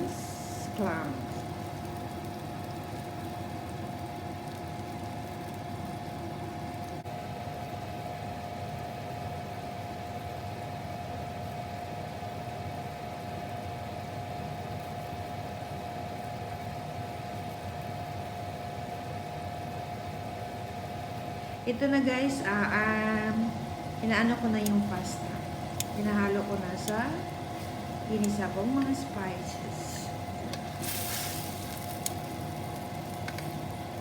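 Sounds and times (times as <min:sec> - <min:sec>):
steady hum: 0:00.0 - 0:07.9, 0:19.6 - 0:34.0
sauce cooking in a pan: 0:00.0 - 0:34.0.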